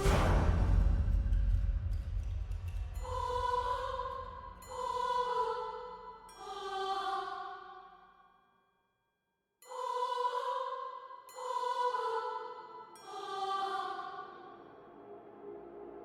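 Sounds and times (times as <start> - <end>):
low rumble: 0.0 - 4.6
eerie choir-like notes: 0.0 - 7.9, 9.6 - 16.0.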